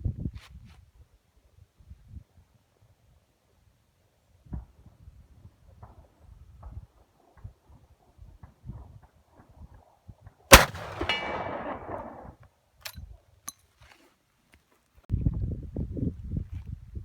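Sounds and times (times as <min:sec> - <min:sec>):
rifle shot with rolling echo: 0:10.5 - 0:12.3.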